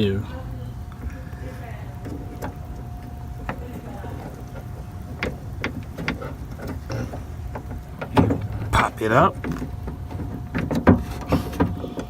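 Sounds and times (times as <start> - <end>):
steady low rumble: 0.0 - 10.8
faint constant tone: 0.0 - 12.0.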